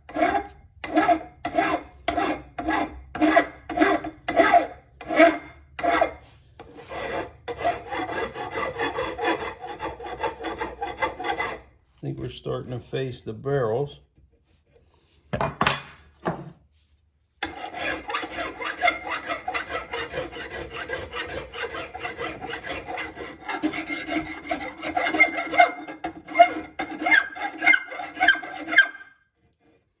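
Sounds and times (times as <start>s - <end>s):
file rasping on metal: 0.0s - 11.8s, 17.4s - 30.0s
barrels ringing: 15.4s - 16.4s.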